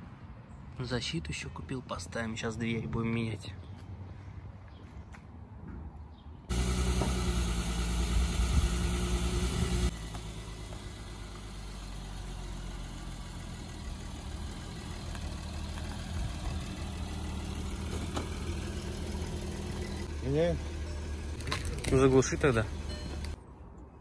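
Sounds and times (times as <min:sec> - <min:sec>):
car engine idling: 0:06.5 - 0:23.4.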